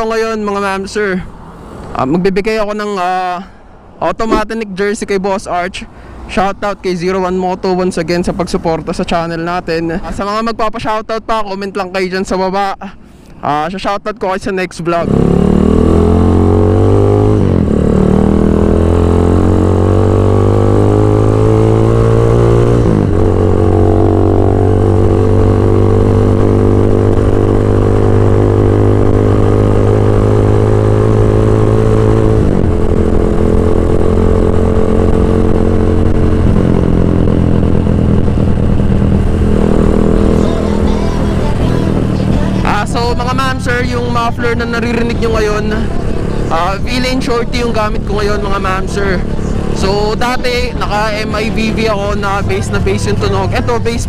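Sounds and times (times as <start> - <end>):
motorcycle engine riding: 14.9 - 54.0.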